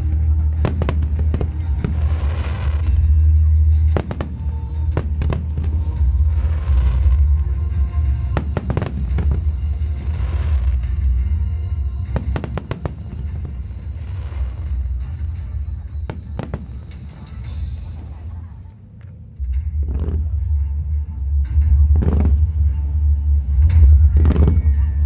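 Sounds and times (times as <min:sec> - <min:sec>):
music with heavy bass: 0:00.0 - 0:18.4, 0:19.4 - 0:25.0
fireworks cracking and banging: 0:00.0 - 0:18.5
fireworks crackling: 0:00.0 - 0:18.7.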